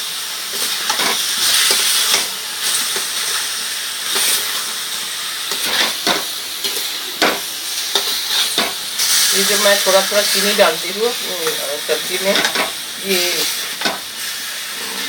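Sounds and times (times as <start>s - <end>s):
vegetables sizzling in hot oil: 0.0s - 15.0s
spatula scraping and knocking pan: 0.6s - 2.3s, 5.5s - 8.8s, 12.2s - 12.8s, 13.8s - 14.1s.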